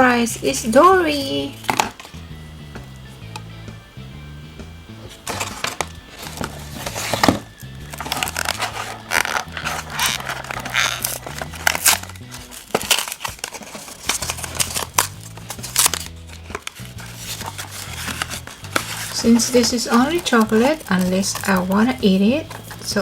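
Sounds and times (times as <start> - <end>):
background music with bass line: 0.0 - 23.0
wrapper crinkling: 5.1 - 23.0.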